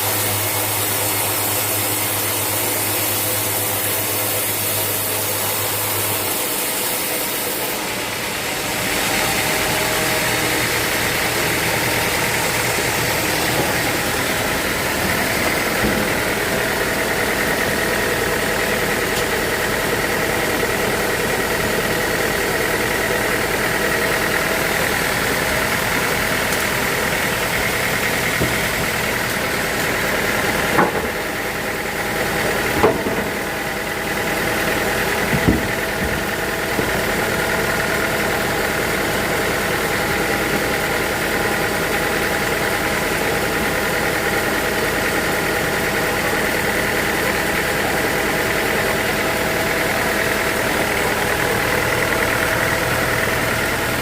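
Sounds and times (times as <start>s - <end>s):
sawmill machinery whining: 0.0s - 54.0s
sharp knocks: 30.7s - 31.2s, 32.7s - 33.5s, 35.3s - 37.0s.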